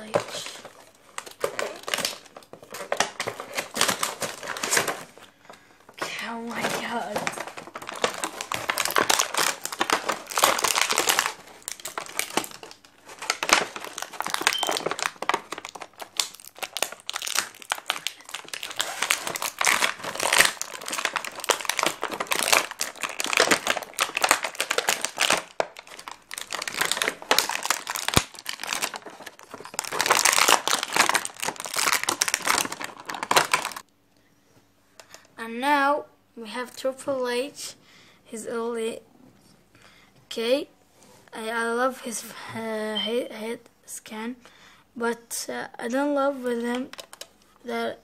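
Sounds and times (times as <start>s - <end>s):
packaging crinkling and rustling: 0.0s - 33.9s, 46.8s - 47.4s.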